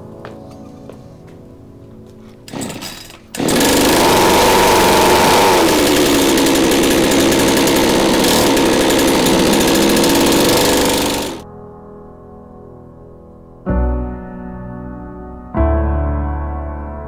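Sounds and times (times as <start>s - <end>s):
two-stroke engine at high revs: 2.5s - 11.4s.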